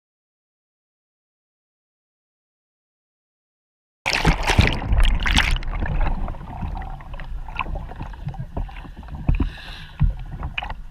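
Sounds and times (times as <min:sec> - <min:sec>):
water splashing and rushing: 0:04.1 - 0:10.9.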